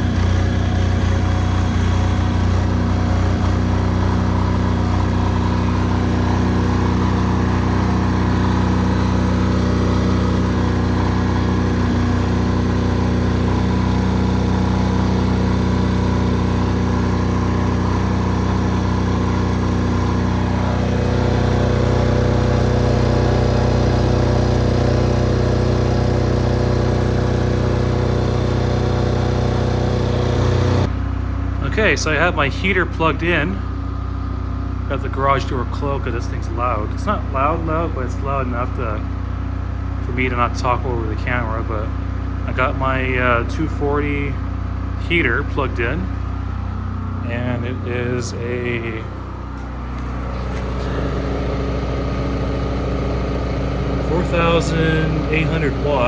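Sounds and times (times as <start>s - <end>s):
diesel generator engine running: 0.0s - 56.0s.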